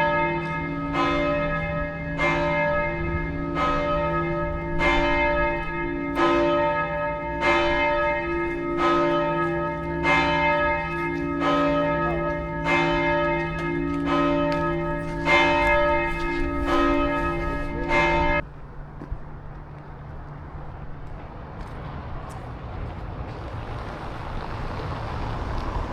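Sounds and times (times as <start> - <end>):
church bell tolling: 0.0 - 18.5.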